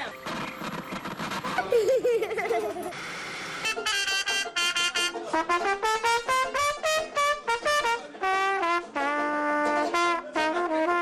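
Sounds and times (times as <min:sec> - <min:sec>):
brass music led by trumpet: 0:03.5 - 0:11.0.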